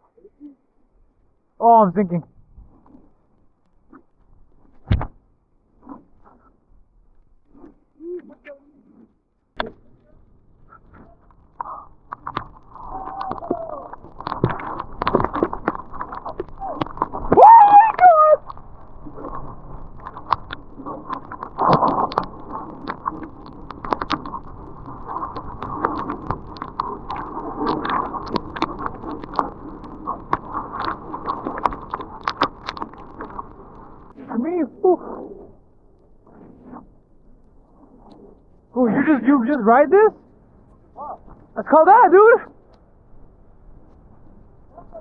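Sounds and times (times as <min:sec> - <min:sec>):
person yelling: 0:16.6 - 0:18.4, 0:41.0 - 0:42.4.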